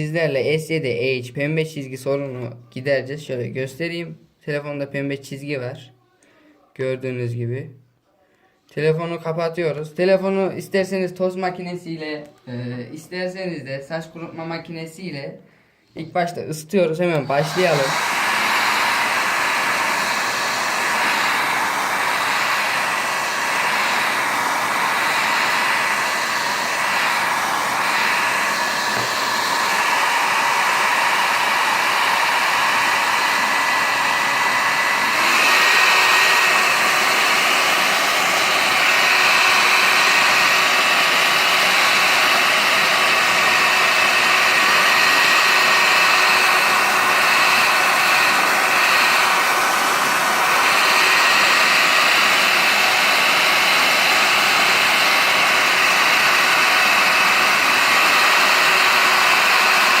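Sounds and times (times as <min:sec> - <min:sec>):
hair dryer blowing: 0:16.8 - 1:00.0.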